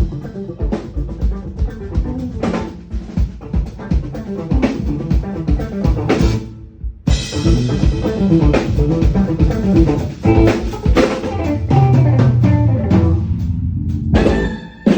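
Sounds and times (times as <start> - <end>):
bass guitar: 0.0 - 14.9
drum kit playing: 0.0 - 14.9
electric guitar: 0.0 - 14.9.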